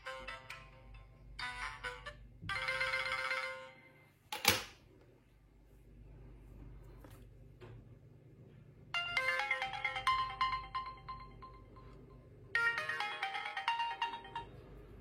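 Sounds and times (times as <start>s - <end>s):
melodic phone ringtone: 0.0s - 4.2s, 9.0s - 15.0s.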